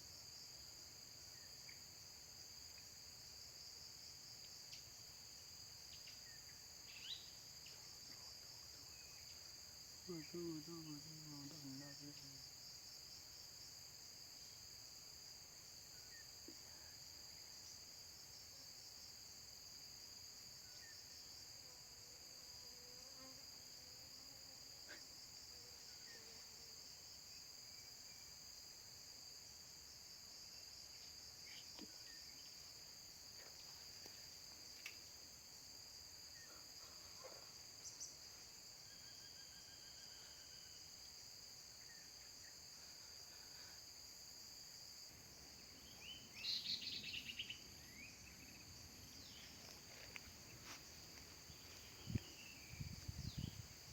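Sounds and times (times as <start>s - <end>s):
faint chirps and ticks: 1.3s - 3.2s, 4.1s - 13.2s, 30.6s - 35.4s, 45.7s - 53.9s.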